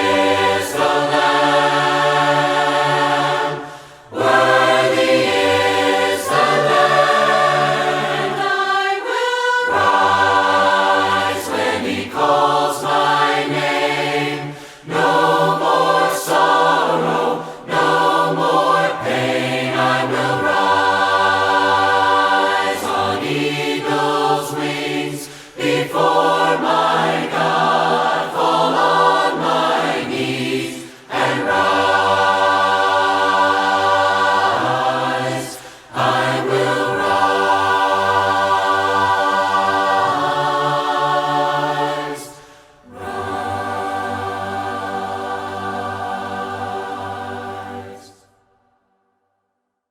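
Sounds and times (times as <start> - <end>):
choir singing a hymn: 0.0 - 48.5
singers breathing: 3.6 - 4.2, 14.4 - 15.0, 17.3 - 17.7, 25.2 - 25.8, 30.7 - 31.2, 35.6 - 36.0, 42.2 - 42.9.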